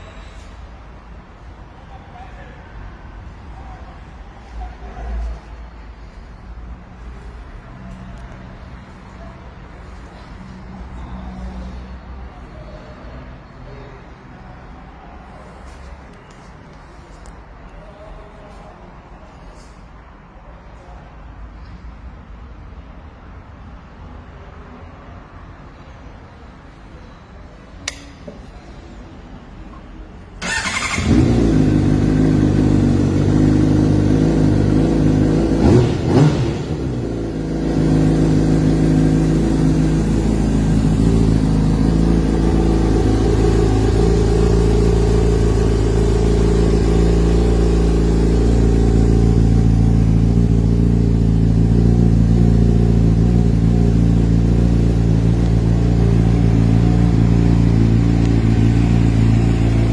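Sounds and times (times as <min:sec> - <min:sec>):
click: 0:27.8 - 0:28.4
motorcycle engine starting and idling: 0:30.4 - 0:59.9.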